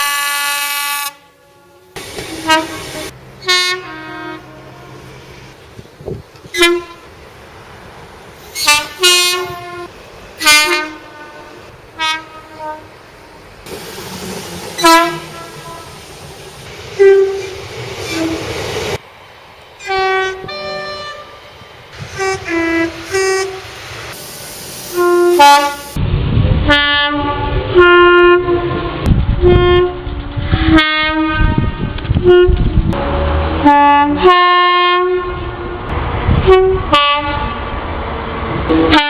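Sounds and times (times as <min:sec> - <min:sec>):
train horn blasts: 0:00.0 - 0:05.3, 0:06.5 - 0:07.1, 0:08.6 - 0:13.0, 0:14.8 - 0:16.0, 0:17.0 - 0:18.5, 0:19.8 - 0:21.4, 0:22.0 - 0:23.7, 0:24.9 - 0:26.0, 0:26.7 - 0:37.7, 0:38.7 - 0:39.0
train noise: 0:00.0 - 0:39.0.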